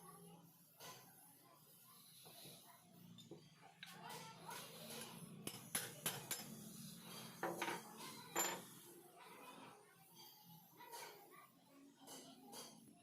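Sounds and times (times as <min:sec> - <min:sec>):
metal tools clinking: 0:07.4 - 0:08.6.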